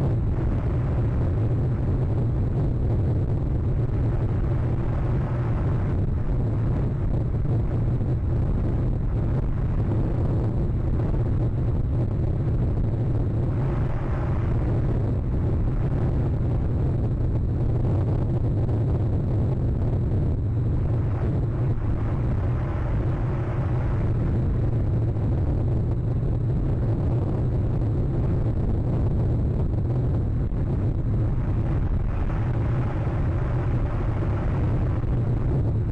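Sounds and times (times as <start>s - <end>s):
wind buffeting microphone: 0.0s - 35.9s.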